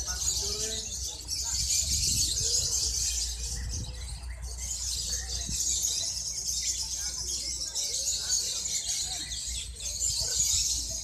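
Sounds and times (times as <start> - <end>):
lovebirds chattering trill: 0.0 - 11.0.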